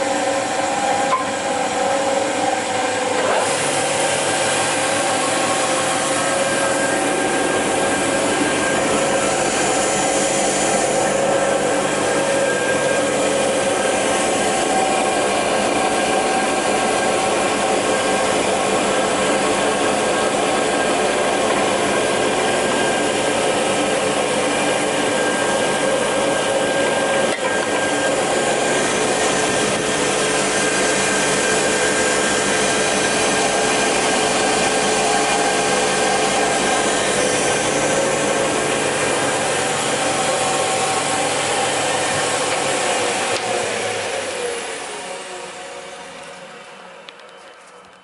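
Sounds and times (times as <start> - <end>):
circular saw running: 0.0 - 46.9.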